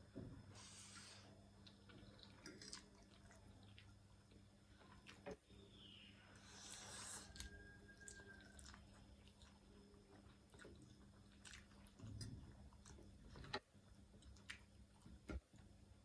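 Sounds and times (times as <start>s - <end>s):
person chewing: 6.4s - 13.6s.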